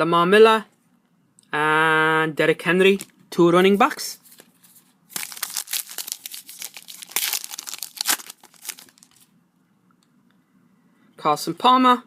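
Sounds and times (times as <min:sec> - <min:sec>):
foil wrapper tearing and crinkling: 0:05.1 - 0:09.3.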